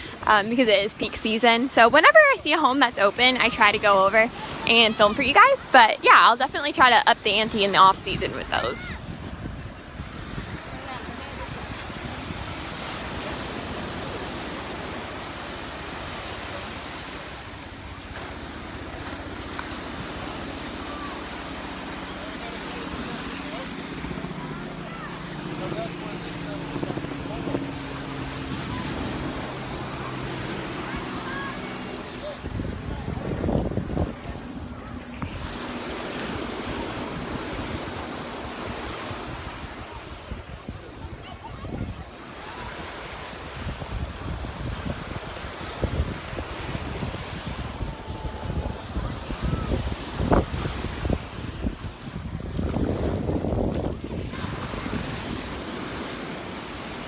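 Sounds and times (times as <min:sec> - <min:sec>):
surf washing onto beach: 0:00.0 - 0:57.0
wind buffeting microphone: 0:03.1 - 0:57.0.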